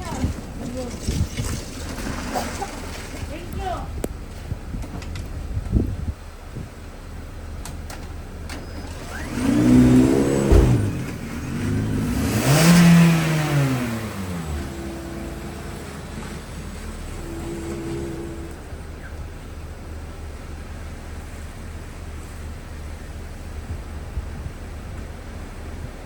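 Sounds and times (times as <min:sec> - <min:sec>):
car engine revving: 0:08.5 - 0:20.8.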